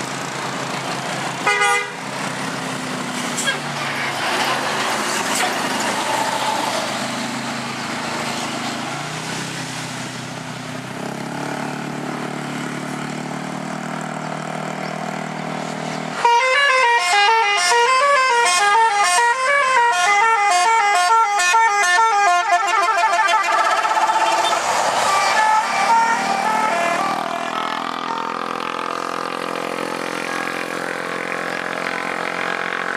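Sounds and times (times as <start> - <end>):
large vehicle engine running: 0.0 - 16.2
road noise: 0.0 - 32.9
multi-tone bus horn melody: 1.4 - 2.1, 16.2 - 28.9.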